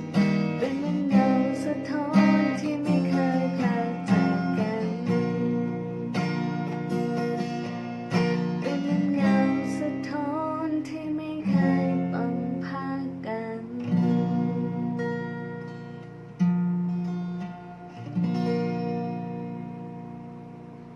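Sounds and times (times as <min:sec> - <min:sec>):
acoustic guitar strumming chords: 0:00.0 - 0:20.9.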